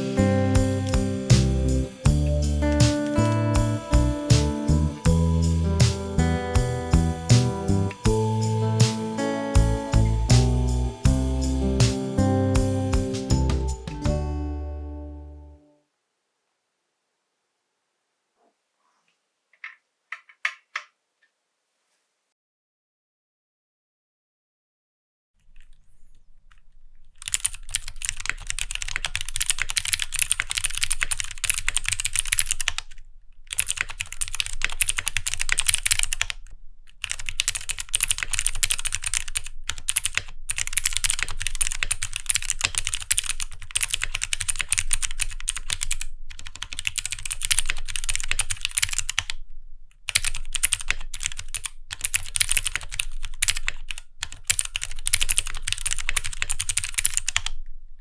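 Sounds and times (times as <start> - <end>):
rapid mechanical keyboard typing: 27.2 - 36.4, 37.0 - 49.4, 50.1 - 57.5.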